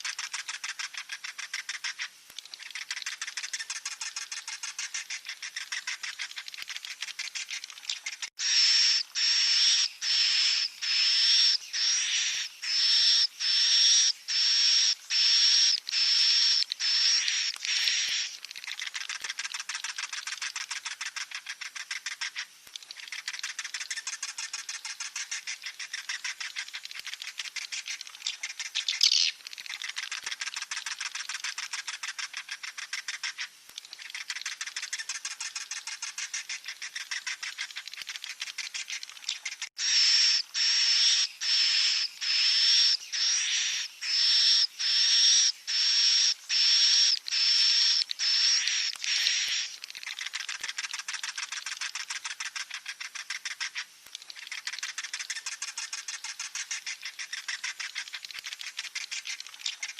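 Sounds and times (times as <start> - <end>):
swiftlet chicks buzzing chatter: 2.6 - 22.4
whistled bird chirps: 7.2 - 18.4, 38.8 - 49.8.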